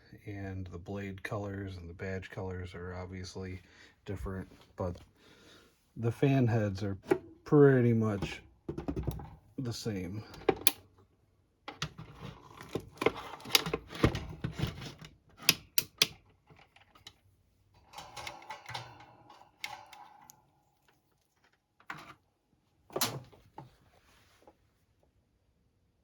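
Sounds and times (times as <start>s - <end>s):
clicks and knocks of handling: 10.3s - 11.0s, 11.7s - 22.2s.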